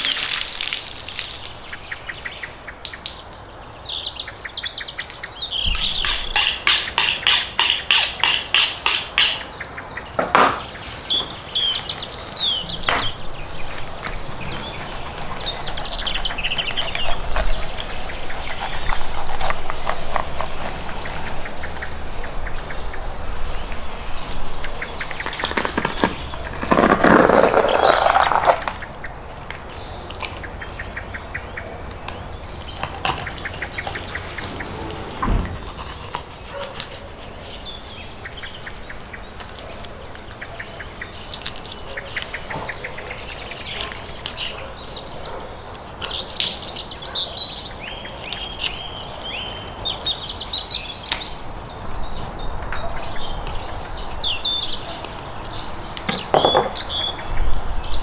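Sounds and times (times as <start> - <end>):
small birds chirping and singing: 0.0 - 58.0
dull knocks: 12.9 - 13.2.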